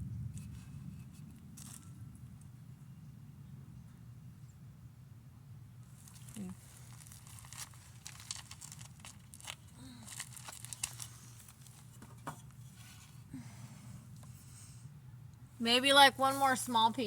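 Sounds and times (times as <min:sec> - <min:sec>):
steady low hum: 0:00.0 - 0:17.0
crinkling and scraping clicks: 0:00.4 - 0:02.0, 0:05.9 - 0:13.2.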